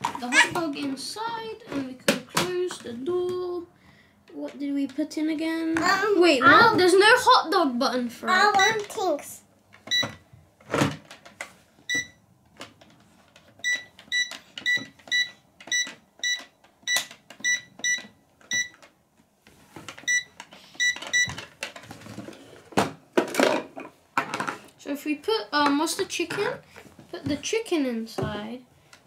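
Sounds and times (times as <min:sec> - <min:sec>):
toy buttons beeping: 0:08.5 - 0:08.9, 0:09.9 - 0:10.1, 0:13.6 - 0:18.8, 0:20.1 - 0:21.3
plastic clatter: 0:19.7 - 0:24.7.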